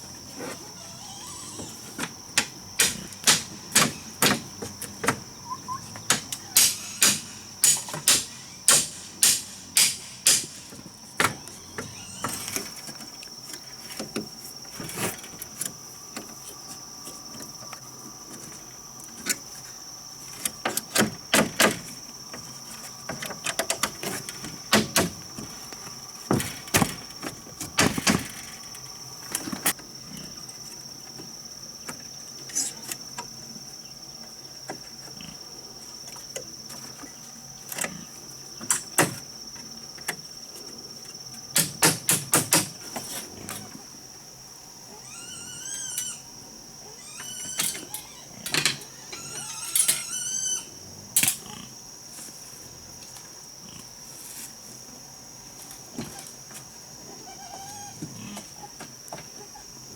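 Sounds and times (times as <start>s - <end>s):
high-pitched insect drone: 0.0s - 13.1s, 44.9s - 51.7s
sharp knocks: 2.4s - 5.2s, 6.1s - 11.4s.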